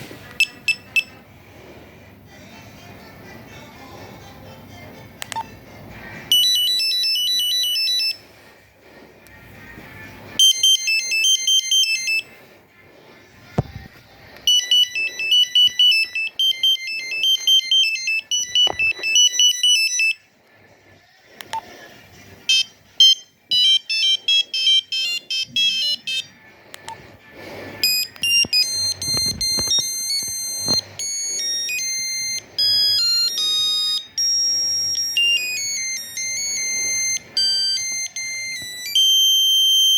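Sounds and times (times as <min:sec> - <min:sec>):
mobile phone monophonic ringtones: 0:00.4 - 0:01.2, 0:06.3 - 0:08.2, 0:10.4 - 0:12.3, 0:14.5 - 0:20.2, 0:22.5 - 0:26.3, 0:27.8 - 0:39.9.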